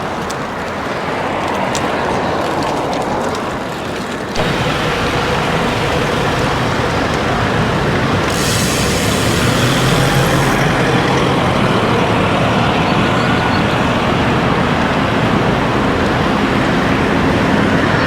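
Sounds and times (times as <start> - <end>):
street noise with clicks: 0.0 - 18.0
road traffic rumble: 4.3 - 18.0.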